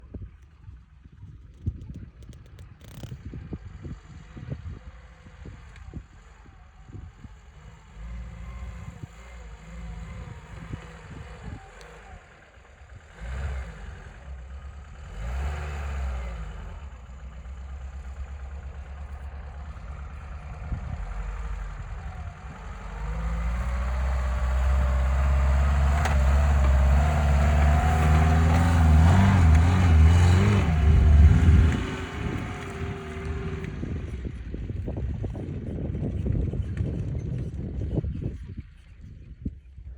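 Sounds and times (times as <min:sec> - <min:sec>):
car engine revving: 0:05.0 - 0:34.3.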